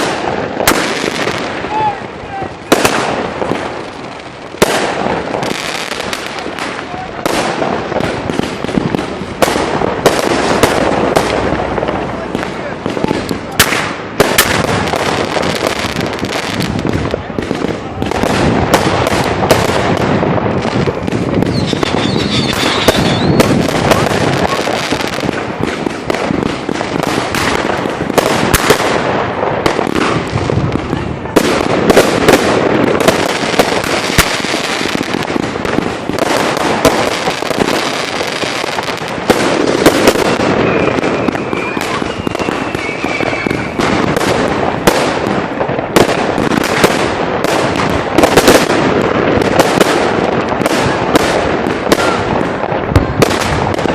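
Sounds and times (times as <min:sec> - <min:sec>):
fireworks bangs and crackling: 0:00.0 - 0:53.9
fireworks whistle: 0:20.9 - 0:26.1, 0:36.8 - 0:45.0, 0:50.6 - 0:52.6.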